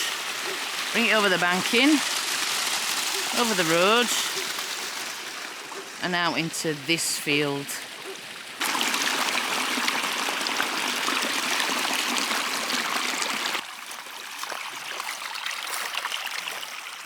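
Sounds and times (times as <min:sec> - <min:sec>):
rush of flowing water: 0:00.0 - 0:17.0.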